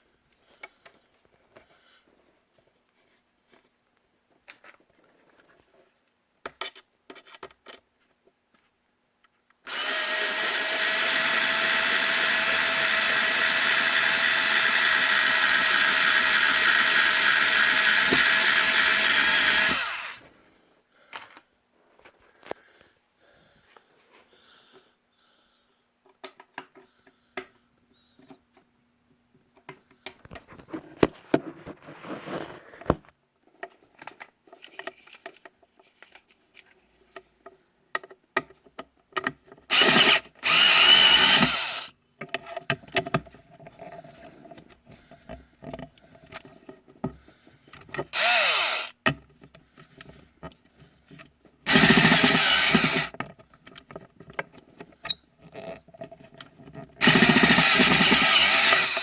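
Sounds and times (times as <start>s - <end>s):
power drill running: 9.7s - 20.3s, 39.7s - 41.9s, 48.1s - 48.9s, 51.7s - 53.1s, 57.0s - 59.0s.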